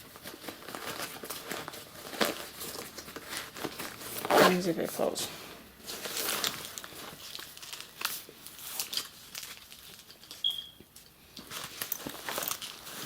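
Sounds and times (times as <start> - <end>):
fabric backpack rustling: 0.2 - 5.2
brief high squeak: 10.4 - 10.8.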